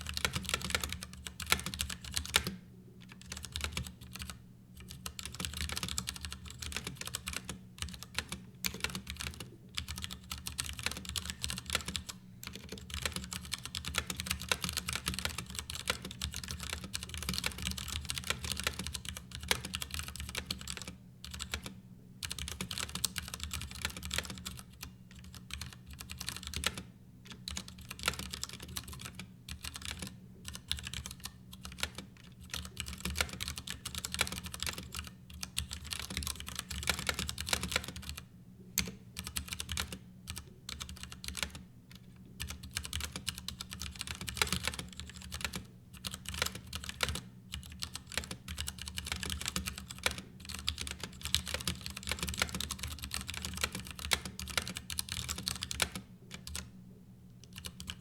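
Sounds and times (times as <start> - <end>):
mechanical keyboard typing: 0.0 - 38.2, 38.8 - 41.6, 42.4 - 56.7, 57.4 - 58.0.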